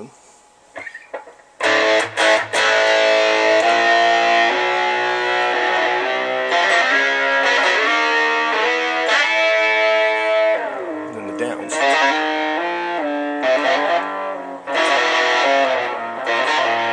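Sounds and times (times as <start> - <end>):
electric guitar strumming: 0.7 - 16.9.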